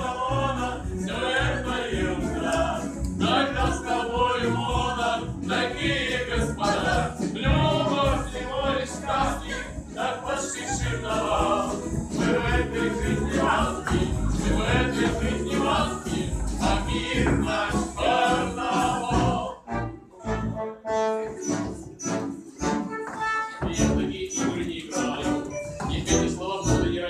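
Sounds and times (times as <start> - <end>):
song with voices singing: 0.0 - 20.6, 21.2 - 27.0.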